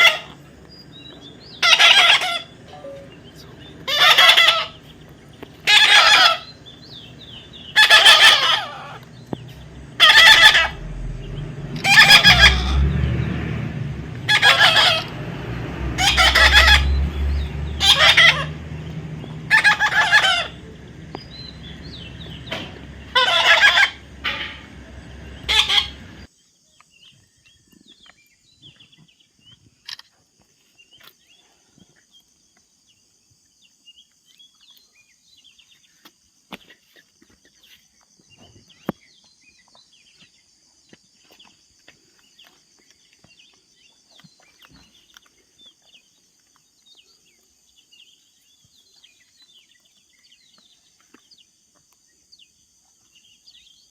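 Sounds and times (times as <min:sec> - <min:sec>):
parrot calling shrilly: 0:01.6 - 0:03.2, 0:03.8 - 0:04.8, 0:05.6 - 0:06.5, 0:07.7 - 0:09.0, 0:10.0 - 0:10.9, 0:11.8 - 0:12.8, 0:14.3 - 0:15.1, 0:16.0 - 0:17.0, 0:17.8 - 0:18.6, 0:19.5 - 0:20.6, 0:23.1 - 0:24.7, 0:25.4 - 0:26.1.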